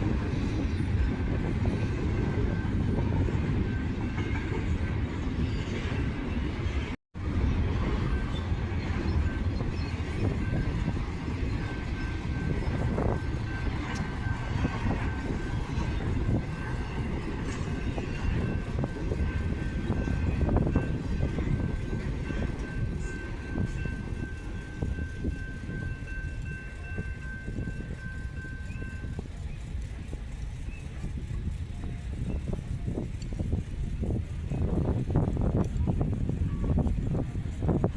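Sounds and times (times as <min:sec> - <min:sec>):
freight train wheels rumbling: 0:00.0 - 0:37.9
train clicks: 0:07.7 - 0:37.9.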